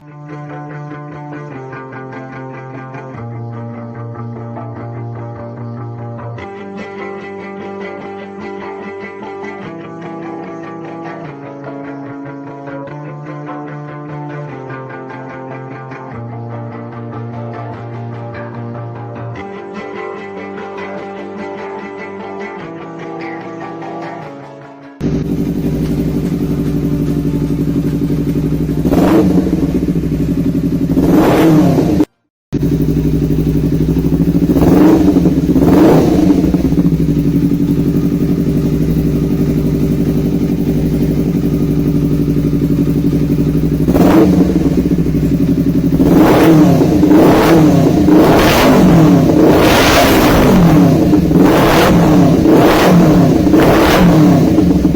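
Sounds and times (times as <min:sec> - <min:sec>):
motorcycle engine idling: 0:25.0 - 0:54.9
motorcycle engine revving in blips: 0:25.0 - 0:54.9.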